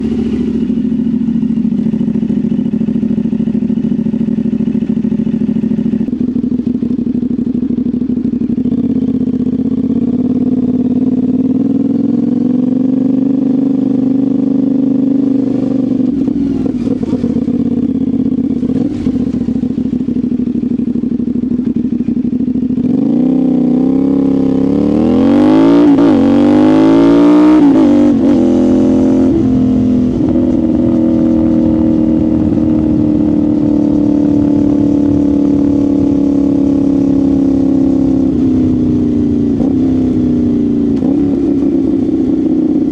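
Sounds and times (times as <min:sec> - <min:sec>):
motorcycle engine revving: 0:00.0 - 0:42.9.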